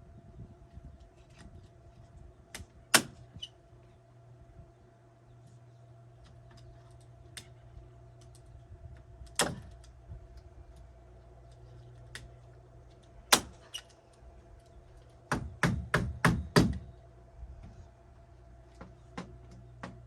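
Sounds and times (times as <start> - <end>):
steady low hum: 0.0 - 20.0
sharp knocks on a door: 15.3 - 16.9.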